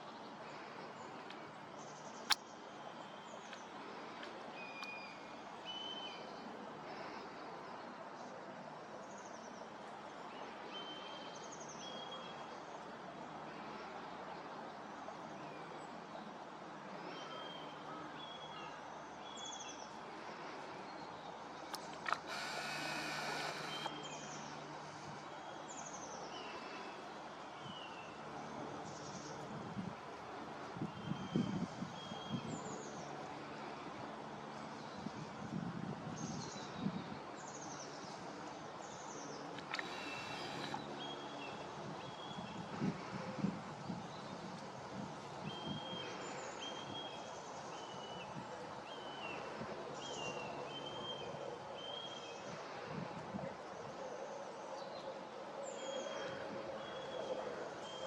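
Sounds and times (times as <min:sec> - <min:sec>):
steady wind: 0:00.0 - 0:58.0
small birds chirping: 0:21.5 - 0:24.7
sharp click: 0:21.7 - 0:24.0
buzzing mechanical whirr: 0:21.7 - 0:24.2, 0:39.5 - 0:41.3.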